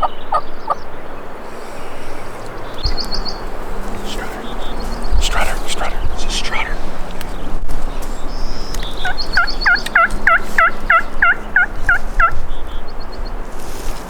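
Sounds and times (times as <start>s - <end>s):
faint songbird chirps: 0.0s - 14.0s
turkey yelping: 8.7s - 12.3s.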